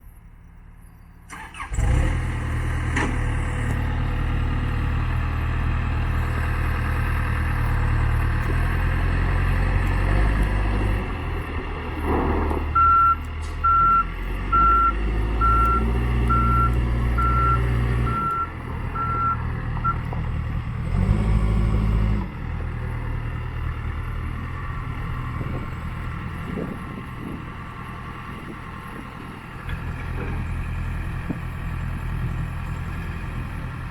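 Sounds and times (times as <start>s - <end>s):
diesel engine running: 0.0s - 33.9s
reversing alarm beeps: 12.8s - 20.0s.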